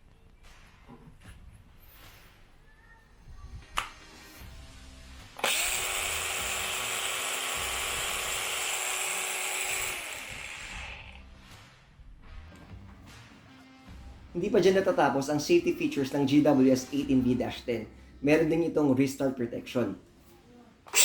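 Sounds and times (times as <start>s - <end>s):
angle grinder running: 5.4s - 11.2s.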